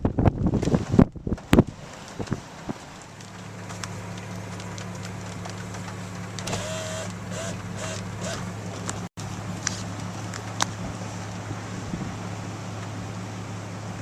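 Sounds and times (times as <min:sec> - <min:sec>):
short squeaks: 0:06.4 - 0:09.0.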